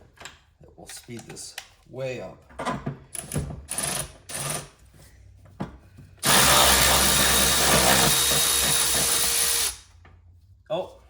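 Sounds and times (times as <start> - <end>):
cordless ratchet motor whirring: 6.2 - 9.8.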